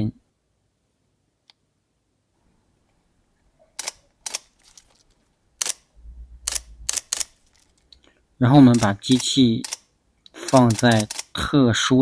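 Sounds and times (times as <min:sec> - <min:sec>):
camera shutter clicks: 0:03.8 - 0:05.0, 0:05.6 - 0:05.9, 0:06.5 - 0:07.8, 0:08.6 - 0:11.4
low camera buzz: 0:05.6 - 0:07.8, 0:08.6 - 0:11.4.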